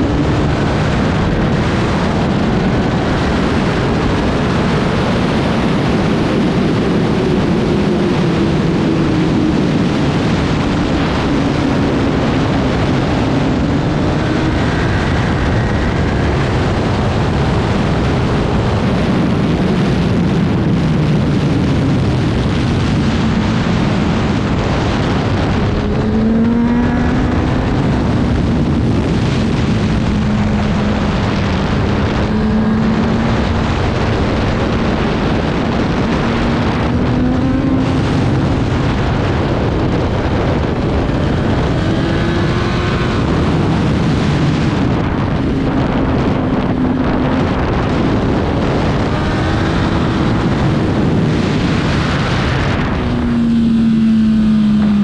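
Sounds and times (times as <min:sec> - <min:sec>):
motorcycle engine at high revs: 0:00.0 - 0:55.0
wind noise on microphone: 0:00.0 - 0:55.0.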